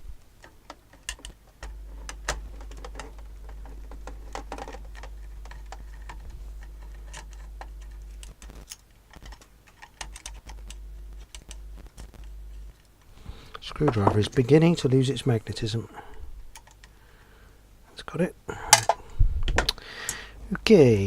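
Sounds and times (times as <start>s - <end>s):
steady low hum: 0.0s - 21.0s
screwdriver and screws clicking: 4.0s - 12.3s.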